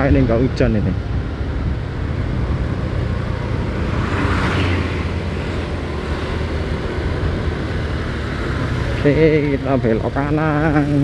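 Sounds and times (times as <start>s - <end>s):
wind and road noise: 0.0s - 11.0s.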